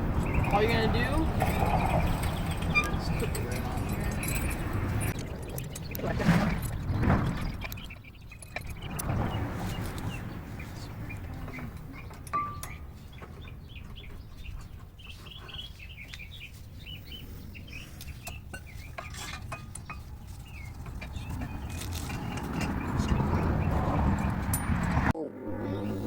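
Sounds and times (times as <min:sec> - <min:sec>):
small birds chirping: 0:00.0 - 0:26.0
light metallic clicks and clinks: 0:01.4 - 0:05.8.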